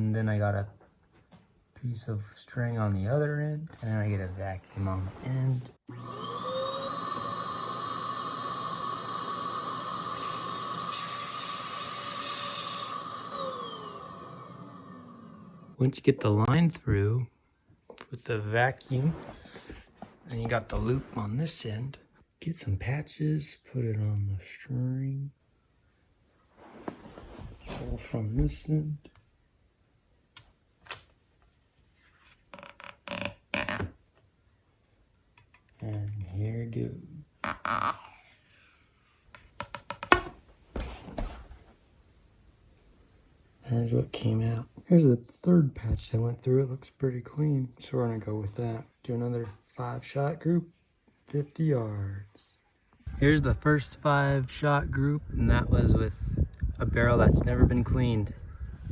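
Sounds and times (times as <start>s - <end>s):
vacuum cleaner motor whine: 5.9s - 15.8s.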